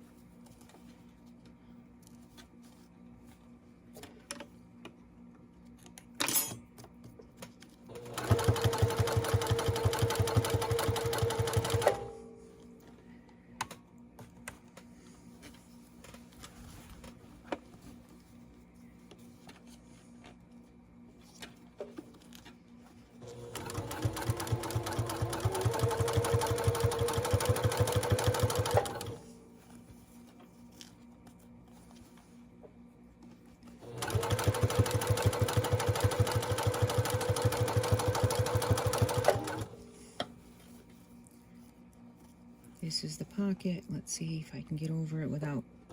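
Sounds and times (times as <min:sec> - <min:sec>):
sewing machine stitching: 0:08.0 - 0:12.1, 0:23.2 - 0:29.2, 0:33.8 - 0:39.8.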